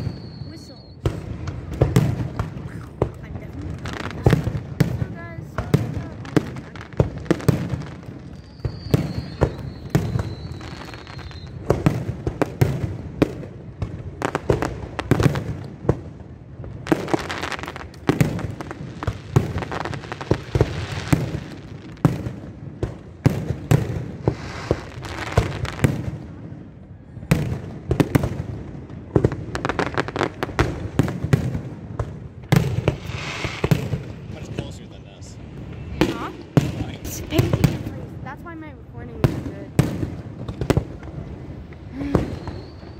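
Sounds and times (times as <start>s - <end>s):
falling firework whistle: 0.0s - 1.2s, 8.2s - 11.9s, 32.6s - 34.0s, 41.8s - 42.9s
fireworks bangs and crackles: 0.0s - 42.9s.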